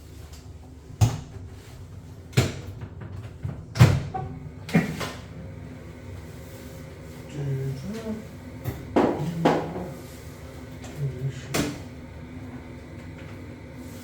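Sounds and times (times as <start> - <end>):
knocks and clunks on boiler casing: 8.6 - 9.9.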